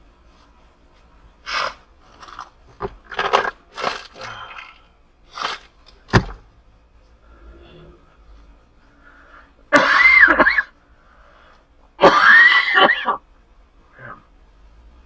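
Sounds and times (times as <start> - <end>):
man sneezing loudly: 12.0 - 13.2.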